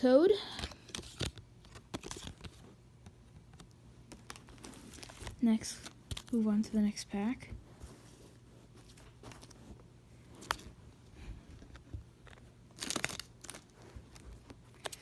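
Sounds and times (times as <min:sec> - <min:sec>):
foil wrapper crinkling: 0:04.1 - 0:06.4, 0:12.2 - 0:15.0.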